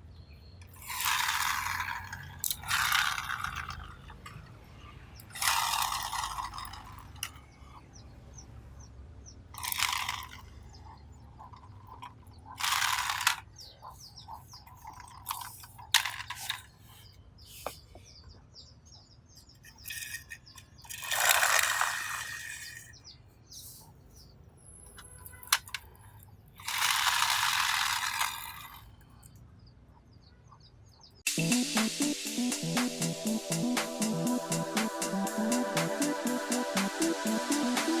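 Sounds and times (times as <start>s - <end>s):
plastic toy clicks and knocks: 0.6s - 4.6s, 5.2s - 7.8s, 9.6s - 16.9s, 19.6s - 23.0s, 24.9s - 29.4s
scraping or rustling: 0.7s - 4.4s, 11.4s - 18.0s.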